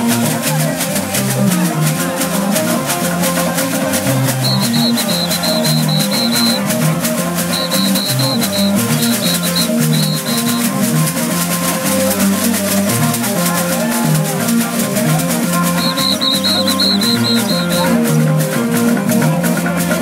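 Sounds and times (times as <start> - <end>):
fast shaker rhythm: 0.0 - 20.0
bass line: 4.2 - 10.9
short high repeated notes: 4.4 - 6.6, 7.5 - 10.7, 15.7 - 17.9.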